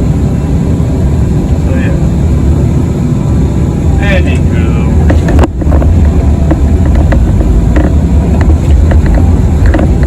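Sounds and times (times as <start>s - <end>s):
excavator diesel engine running: 0.0s - 10.0s
clanks and rattles: 5.0s - 10.0s.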